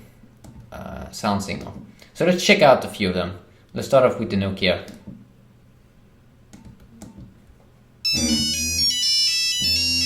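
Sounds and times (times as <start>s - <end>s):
phone ringtone melody: 8.0s - 10.0s.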